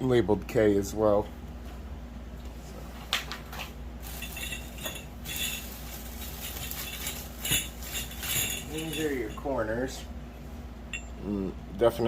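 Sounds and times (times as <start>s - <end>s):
metal poles clinking and rattling: 4.0s - 9.9s.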